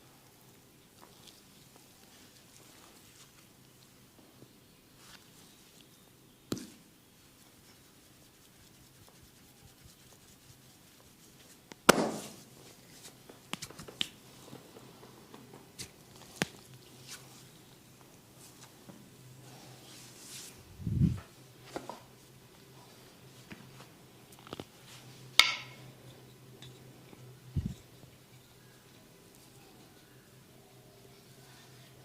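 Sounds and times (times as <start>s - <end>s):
massage cracks and pats: 11.4s - 17.4s, 24.3s - 24.8s.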